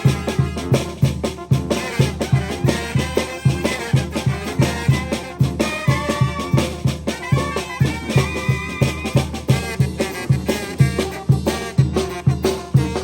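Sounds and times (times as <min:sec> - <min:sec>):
bass drum beat: 0:00.0 - 0:13.0
brass instruments melody: 0:00.0 - 0:13.0.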